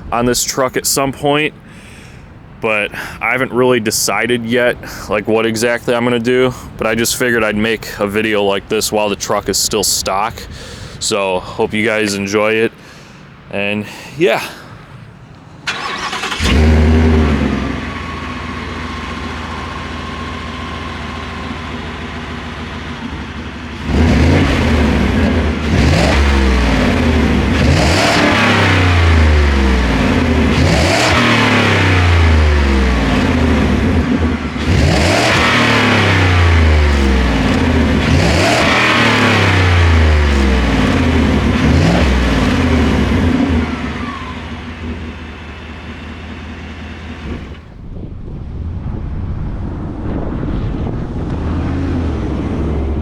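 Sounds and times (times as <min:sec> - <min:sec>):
car engine idling and revving: 0:14.9 - 0:48.0, 0:50.9 - 0:53.0.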